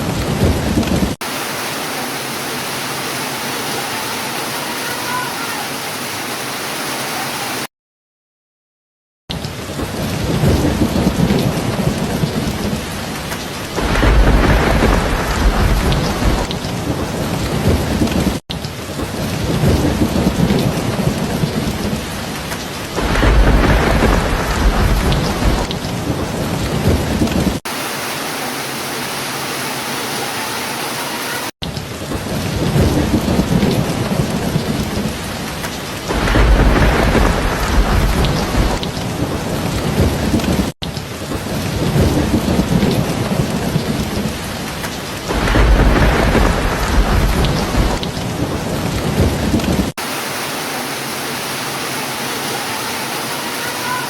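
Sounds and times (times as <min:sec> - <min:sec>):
thunder rolling: 0:00.0 - 0:01.2, 0:09.6 - 0:27.7, 0:32.0 - 0:50.0
heavy rain: 0:00.0 - 0:07.7, 0:09.3 - 0:54.0.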